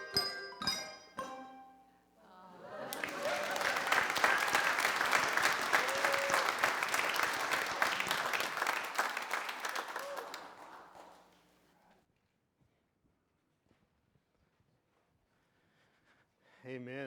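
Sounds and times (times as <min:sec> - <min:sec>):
handbell chords ringing: 0:00.0 - 0:01.7
audience applauding: 0:02.7 - 0:11.5.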